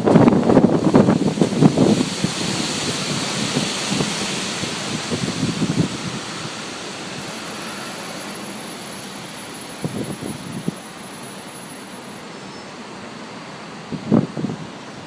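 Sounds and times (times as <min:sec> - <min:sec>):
wind buffeting microphone: 0:00.0 - 0:07.7, 0:09.7 - 0:10.9, 0:13.9 - 0:15.0
storm wind rushing: 0:00.0 - 0:10.9, 0:13.9 - 0:14.8.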